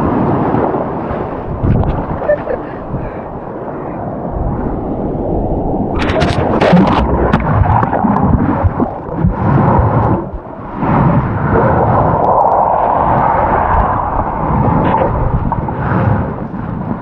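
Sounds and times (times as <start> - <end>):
ocean surf breaking: 0.0 - 17.0
wind buffeting microphone: 0.0 - 17.0
sharp water splashes: 5.9 - 10.3.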